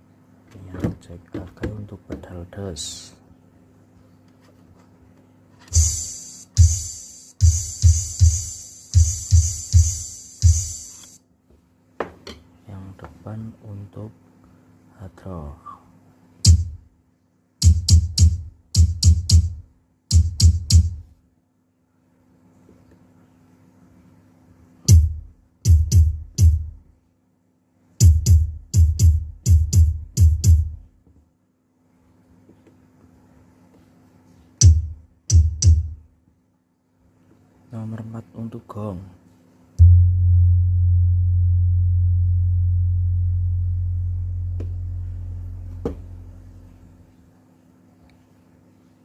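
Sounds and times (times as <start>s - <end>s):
faint steady hum: 0.0s - 49.0s
electronic bass drum booming: 5.8s - 11.0s, 16.5s - 16.8s, 24.9s - 26.8s, 28.0s - 30.8s, 34.6s - 36.0s, 39.8s - 46.3s.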